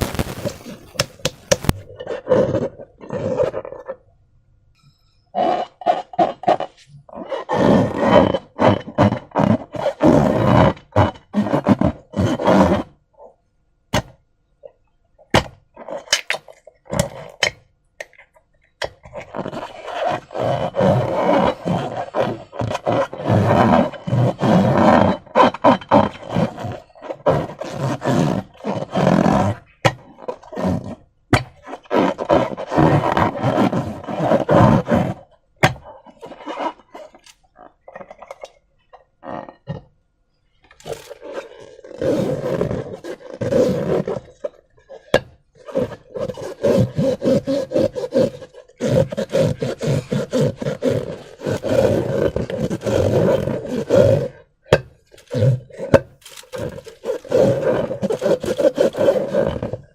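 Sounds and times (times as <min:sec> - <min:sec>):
slime squelching and popping: 0:00.0 - 0:01.9.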